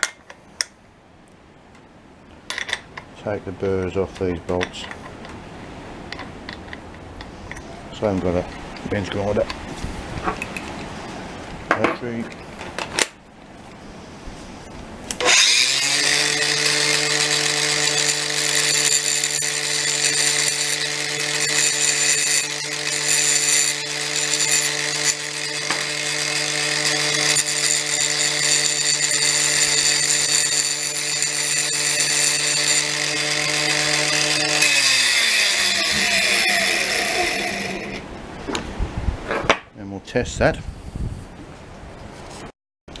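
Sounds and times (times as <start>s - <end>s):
disc grinding metal: 15.2s - 38.0s
drill motor running: 15.2s - 38.0s.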